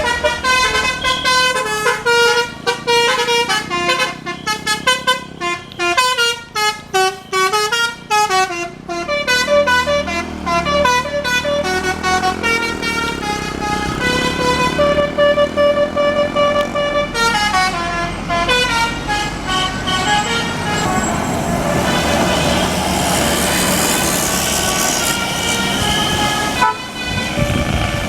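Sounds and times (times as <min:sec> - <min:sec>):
bus engine running: 0:00.0 - 0:28.0
bus melody horn: 0:00.0 - 0:28.0.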